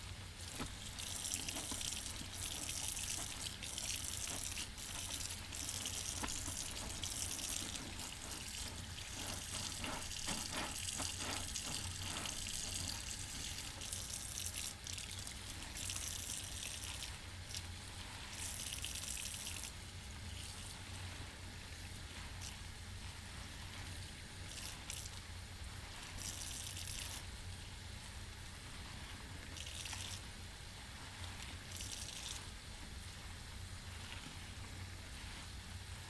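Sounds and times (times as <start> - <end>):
tap water running: 0.0 - 17.7
wet sponge squelches: 0.4 - 25.0.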